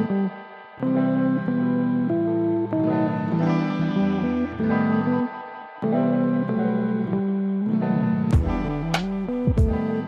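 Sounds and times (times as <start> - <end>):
instrumental guitar music: 0.0 - 10.0.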